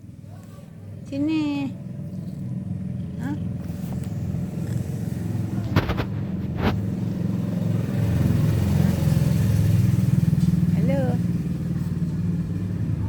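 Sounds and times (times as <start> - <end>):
cat purring: 1.6 - 8.1.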